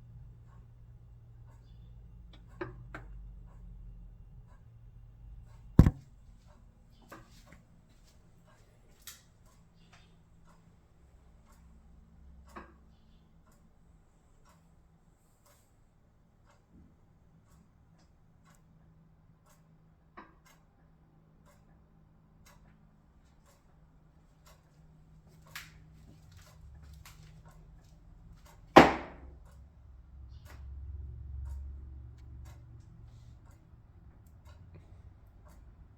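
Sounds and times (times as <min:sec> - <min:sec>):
refrigerator loud bang: 0:05.8 - 0:06.0
faint ticks and clicks: 0:21.4 - 0:23.7.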